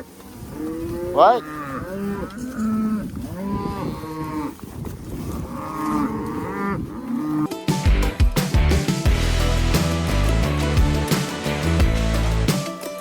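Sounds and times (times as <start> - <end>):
cattle mooing: 0.4 - 4.6, 5.4 - 7.5
music: 7.5 - 13.0.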